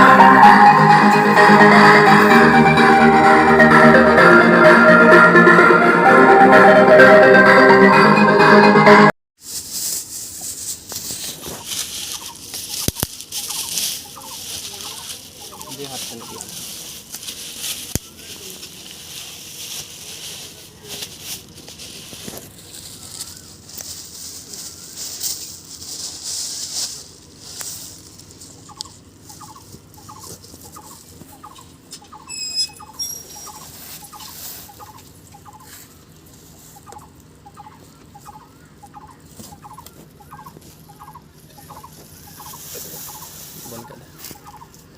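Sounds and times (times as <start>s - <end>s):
short rising bird-like chirps: 32.1s - 33.8s.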